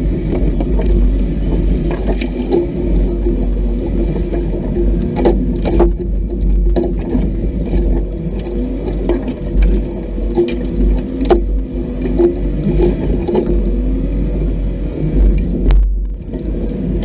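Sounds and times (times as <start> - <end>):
off-road vehicle engine rumble: 0.0 - 17.0.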